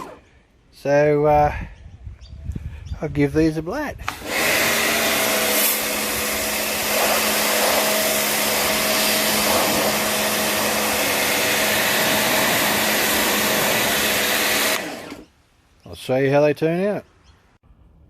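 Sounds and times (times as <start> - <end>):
pressure washer jet blasting metal: 4.1 - 15.3.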